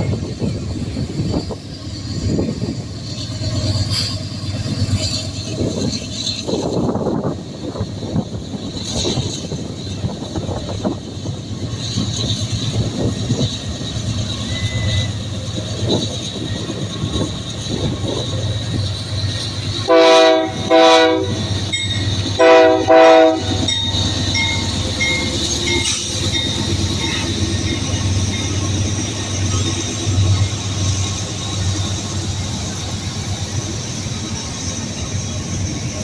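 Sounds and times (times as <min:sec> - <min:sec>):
rolling train rumble and clatter: 0:00.0 - 0:36.0
locomotive air horn blasts: 0:19.8 - 0:21.6, 0:22.3 - 0:23.8.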